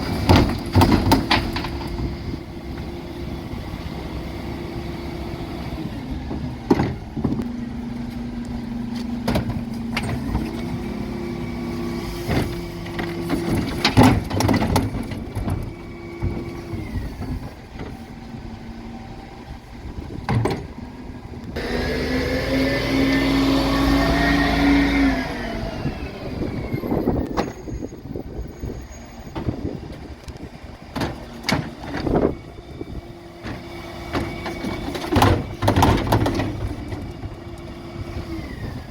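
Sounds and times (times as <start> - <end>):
wheelie bins banging and clattering: 0.0 - 18.3, 29.2 - 38.9
diesel engine running: 0.0 - 38.9
hydraulic whine: 0.0 - 38.9.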